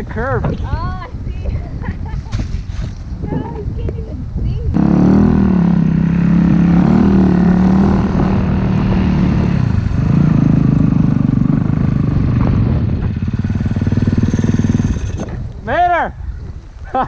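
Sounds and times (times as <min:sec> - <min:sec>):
dirt bike engine under throttle: 0:04.7 - 0:15.5.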